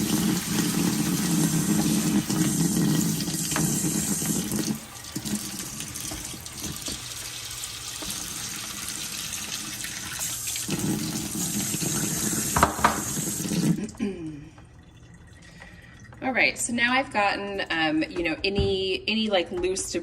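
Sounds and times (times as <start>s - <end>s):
water running from a tap into a sink: 0.0s - 14.0s.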